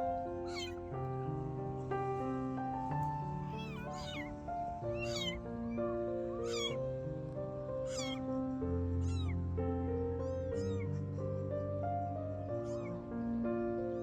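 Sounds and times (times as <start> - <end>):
background music with sustained notes: 0.0 - 14.0
kitten meowing: 0.4 - 0.9, 3.4 - 6.9, 7.8 - 9.6, 10.2 - 14.0.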